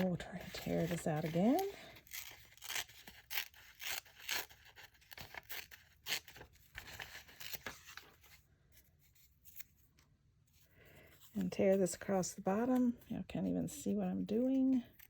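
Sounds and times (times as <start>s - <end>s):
paper tearing by hand: 0.6s - 8.0s.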